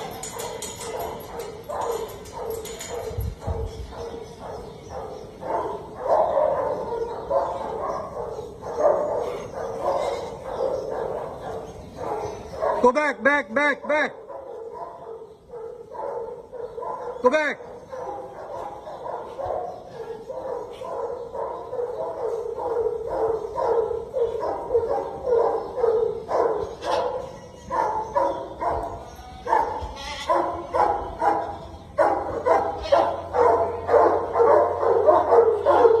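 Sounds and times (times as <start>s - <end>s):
dog barking rapidly: 0.0s - 13.0s, 14.1s - 36.0s.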